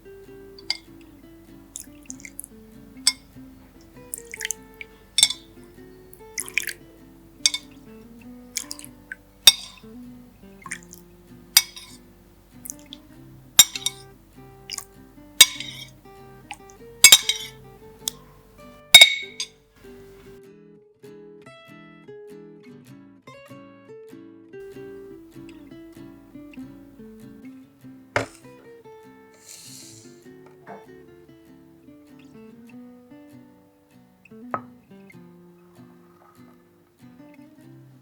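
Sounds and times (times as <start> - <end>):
soft instrumental music: 0.0 - 38.0
kitchenware clinking: 0.6 - 1.2, 1.8 - 20.3, 28.2 - 28.7, 30.5 - 30.9, 34.6 - 34.8.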